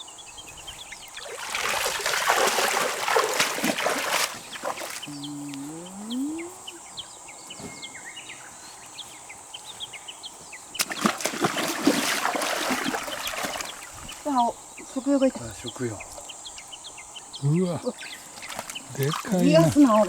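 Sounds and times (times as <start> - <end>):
small birds chirping: 0.0 - 20.0
water splashing and sloshing: 0.5 - 6.8, 10.3 - 16.3, 17.9 - 20.0.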